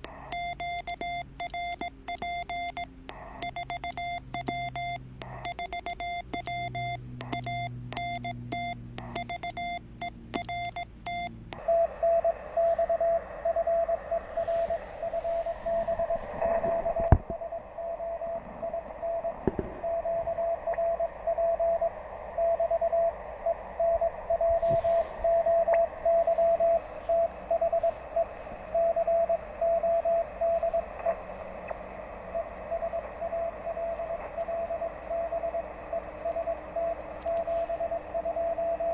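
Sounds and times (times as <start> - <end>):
radio band hiss: 0.0 - 1.0, 3.0 - 4.3, 11.5 - 38.9
morse code tone: 0.0 - 31.0, 32.3 - 38.9.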